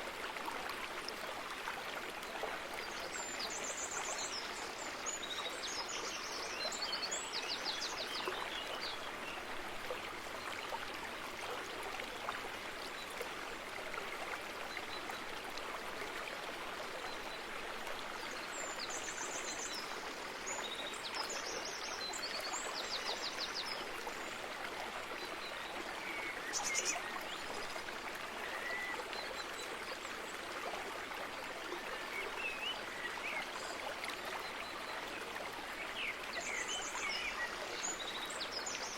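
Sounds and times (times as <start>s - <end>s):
stream water rushing: 0.0s - 38.9s.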